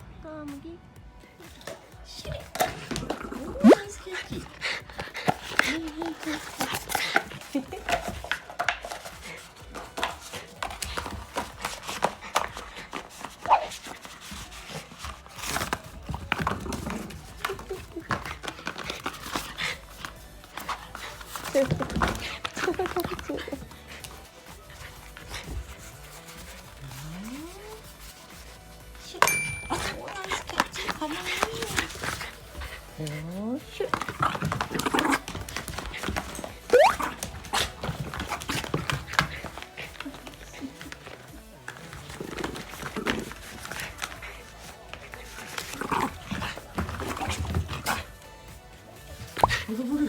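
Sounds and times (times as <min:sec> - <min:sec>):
dog taps and scuffles: 0:01.4 - 0:50.0
dog yelping: 0:36.4 - 0:38.4.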